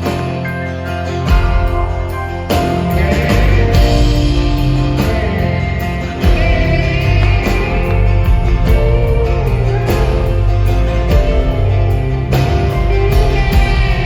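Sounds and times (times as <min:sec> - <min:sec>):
guitars: 0:00.0 - 0:14.0
steady drum beat: 0:00.0 - 0:14.0.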